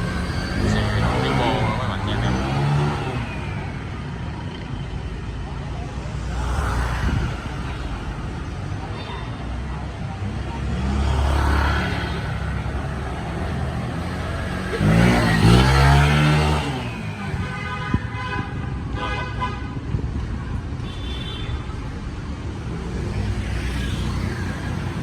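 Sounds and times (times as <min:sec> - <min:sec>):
motorbike engine passing: 0:00.0 - 0:04.5, 0:10.6 - 0:17.2
background engines: 0:00.0 - 0:25.0.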